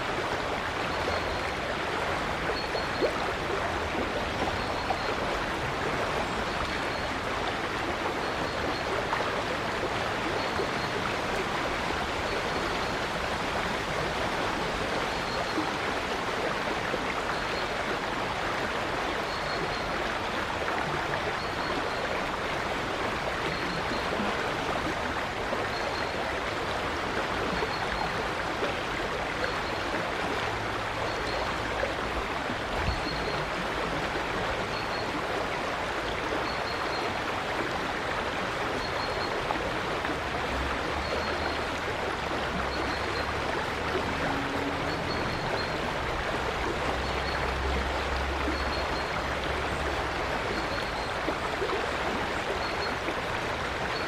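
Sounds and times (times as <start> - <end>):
river water rushing: 0.0 - 54.0.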